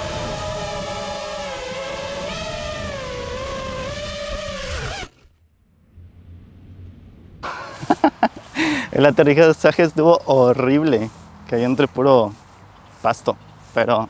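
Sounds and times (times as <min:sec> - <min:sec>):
drone motors whining: 0:00.0 - 0:04.9.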